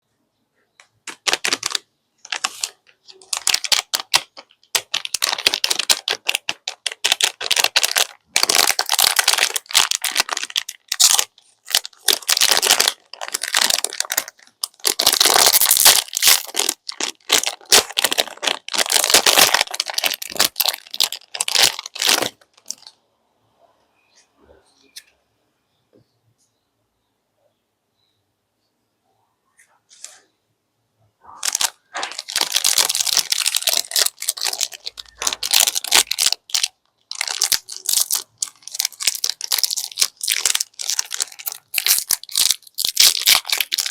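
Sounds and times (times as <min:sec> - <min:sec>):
plastic wrappers crinkling: 0:01.0 - 0:23.0, 0:31.3 - 0:43.9.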